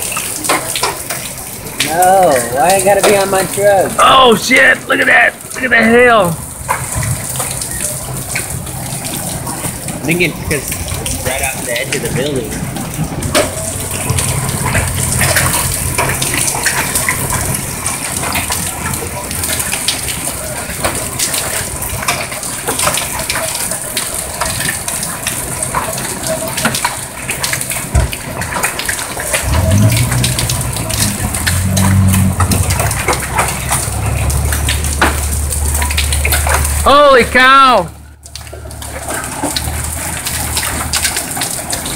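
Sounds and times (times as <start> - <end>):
heavy rain and hail: 0.0 - 41.9
hailstones clicking on hard surfaces: 38.3 - 41.9.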